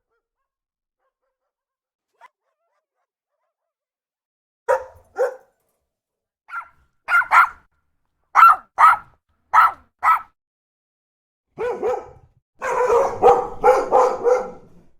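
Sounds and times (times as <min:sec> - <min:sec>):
dog barking: 0:04.7 - 0:05.6, 0:06.5 - 0:07.7, 0:08.4 - 0:10.4, 0:11.6 - 0:14.9.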